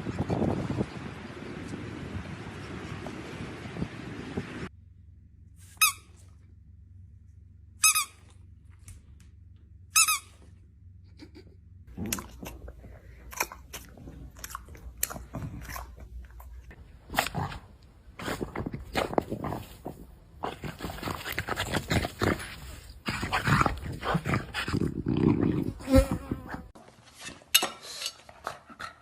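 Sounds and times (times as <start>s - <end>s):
dog chewing something crunchy: 11.9s - 25.5s.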